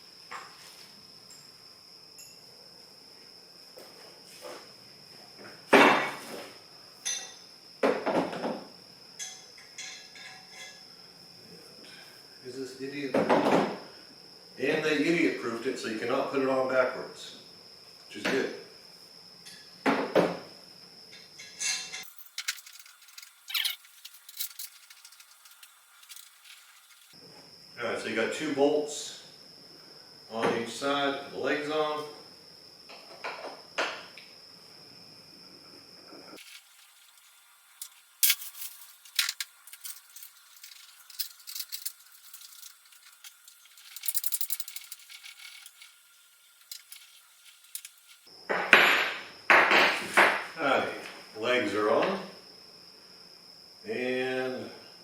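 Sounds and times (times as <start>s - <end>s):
parts clattering: 21.4s - 27.2s, 36.4s - 49.0s
metal hardware clinking: 37.8s - 46.0s.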